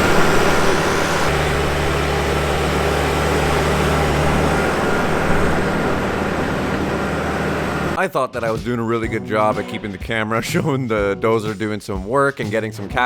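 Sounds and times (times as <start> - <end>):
heavy diesel engine running: 0.0 - 8.0.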